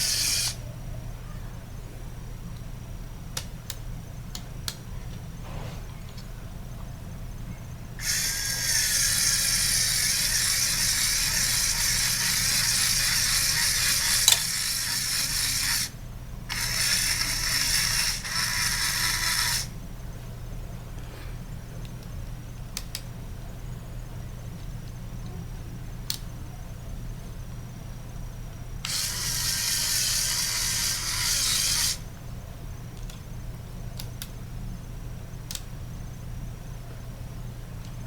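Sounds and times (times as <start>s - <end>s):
small motor whirring gears: 0.0s - 0.6s, 8.0s - 19.7s, 28.8s - 32.1s.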